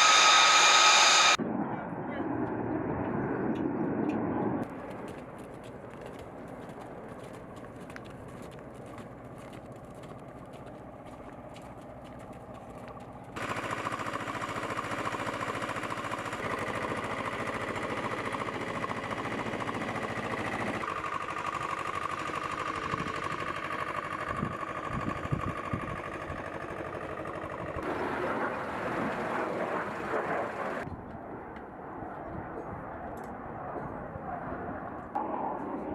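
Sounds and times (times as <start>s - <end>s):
jet engines whining: 0.0s - 4.7s, 27.8s - 35.9s.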